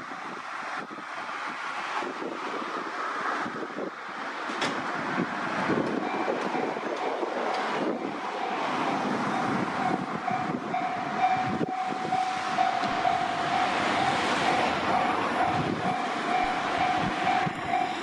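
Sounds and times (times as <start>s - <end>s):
train wheels on rails: 0.1s - 18.0s
electronic level crossing bell: 8.0s - 18.0s.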